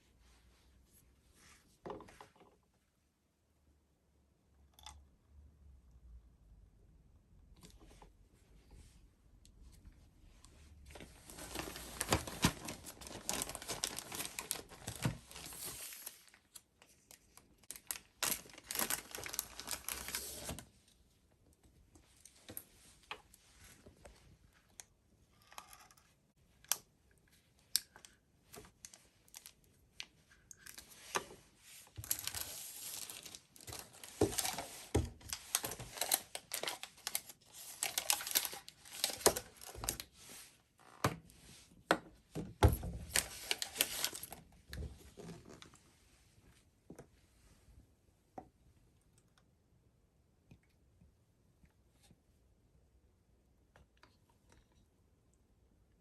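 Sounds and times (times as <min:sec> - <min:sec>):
dry rustling and crinkling: 0:10.9 - 0:20.7, 0:28.5 - 0:40.5, 0:43.0 - 0:45.8.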